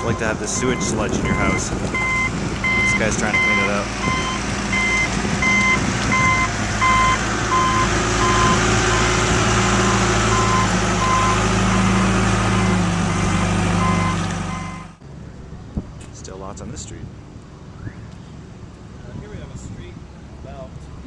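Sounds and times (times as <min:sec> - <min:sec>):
reversing alarm beeping: 0:00.0 - 0:09.2, 0:09.8 - 0:15.0
truck engine running loudly: 0:00.0 - 0:15.0.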